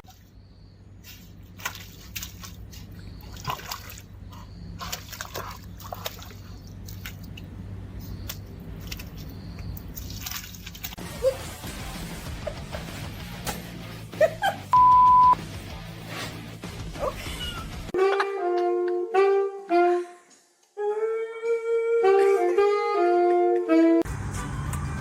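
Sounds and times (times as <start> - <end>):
low steady hum: 0.1 - 11.0
water sloshing and splashing: 1.1 - 11.0.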